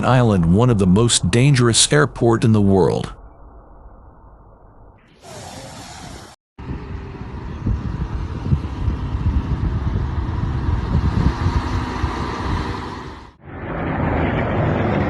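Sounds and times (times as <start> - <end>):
small aircraft engine: 5.3 - 15.0
wind rumble on microphone: 5.3 - 15.0.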